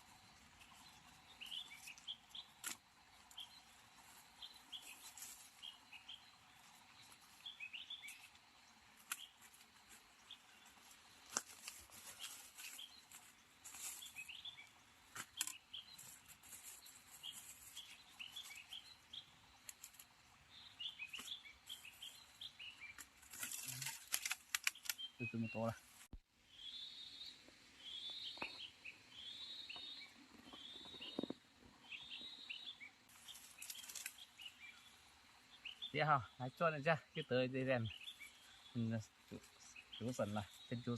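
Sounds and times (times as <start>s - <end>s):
small birds chirping: 0.0s - 40.9s
rustling: 4.0s - 5.8s, 9.0s - 14.3s, 15.1s - 18.7s, 22.8s - 25.1s, 33.1s - 34.3s
sharp snaps: 23.4s - 25.0s.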